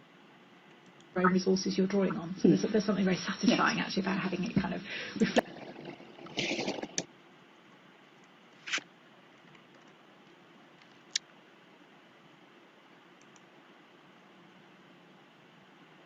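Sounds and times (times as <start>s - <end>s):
faint steady hiss: 0.0s - 16.0s
computer mouse clicks: 0.7s - 1.1s, 13.2s - 13.5s.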